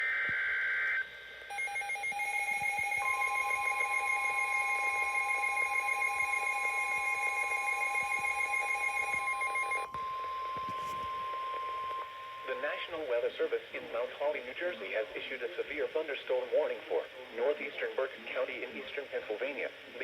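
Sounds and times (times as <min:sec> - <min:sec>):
rapid pulsed alarm beeping: 0:00.0 - 0:13.0
steady warning alarm tone: 0:00.0 - 0:13.2.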